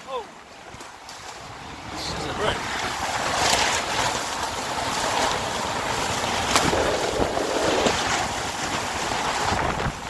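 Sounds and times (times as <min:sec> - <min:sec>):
strong wind buffeting microphone: 0:00.0 - 0:10.0.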